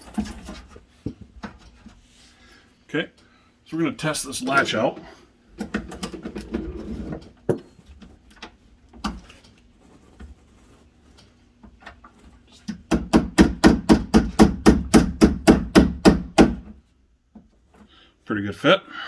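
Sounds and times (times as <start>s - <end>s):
knocks and handling: 4.5s - 17.9s
rapid taps on wood: 12.7s - 16.8s.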